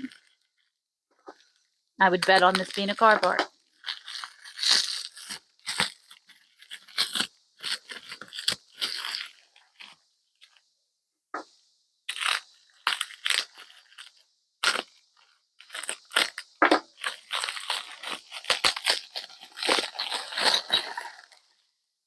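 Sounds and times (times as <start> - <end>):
bubble wrap crinkling and tearing: 0.0 - 10.7, 12.1 - 21.7.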